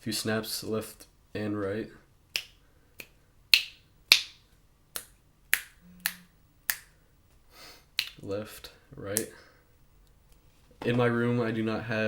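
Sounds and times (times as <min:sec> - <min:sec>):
finger snaps: 0:02.3 - 0:07.0, 0:08.0 - 0:08.2.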